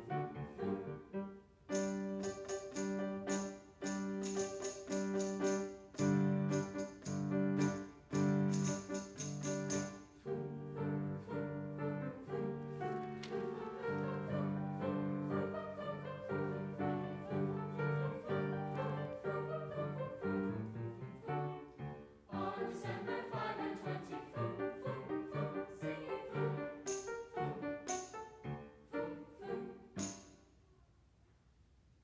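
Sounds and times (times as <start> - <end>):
choir singing: 0.0 - 1.9, 10.2 - 27.9, 28.8 - 30.2.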